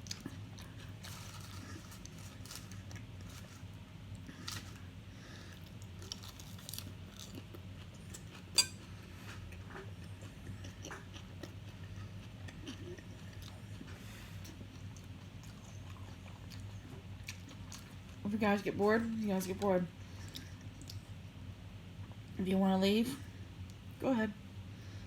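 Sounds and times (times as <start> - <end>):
person chewing food: 0.0 - 18.2, 20.0 - 21.2
low steady hum: 0.0 - 25.0.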